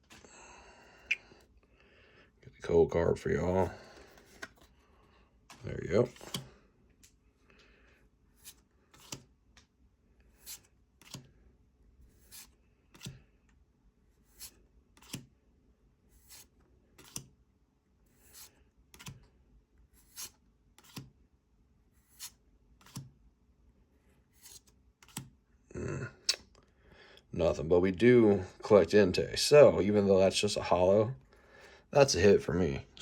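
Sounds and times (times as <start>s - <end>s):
trading cards snapping: 14.4s - 15.3s, 18.2s - 19.2s, 24.4s - 25.3s.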